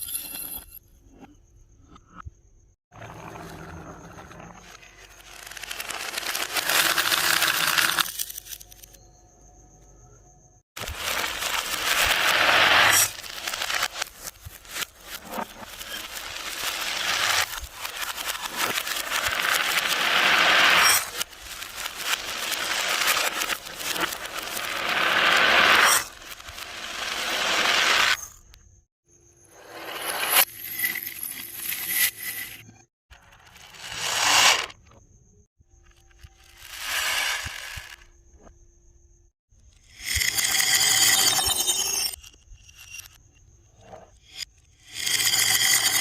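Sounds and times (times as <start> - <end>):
marbles rattling down wooden track: 4.8 - 8.9, 10.8 - 28.2, 33.7 - 34.7, 36.2 - 38.1, 45.0 - 46.0.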